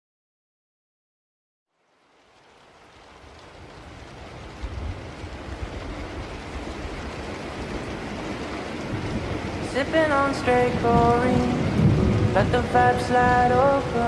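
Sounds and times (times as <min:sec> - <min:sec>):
steady rain: 0:01.7 - 0:14.0
low rumble: 0:10.5 - 0:14.0.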